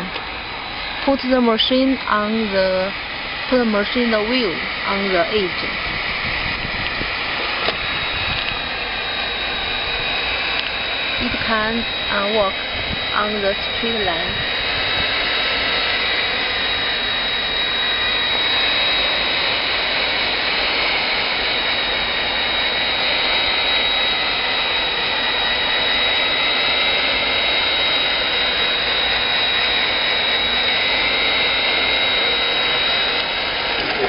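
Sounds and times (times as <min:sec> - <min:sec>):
hot air welder blower whine: 0:00.0 - 0:34.0.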